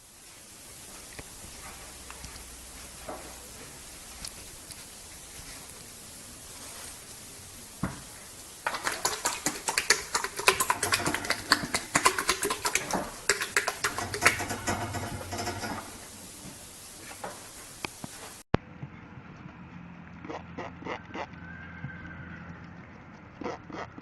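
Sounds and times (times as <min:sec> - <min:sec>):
horse flapping its lips: 0:08.0 - 0:18.4.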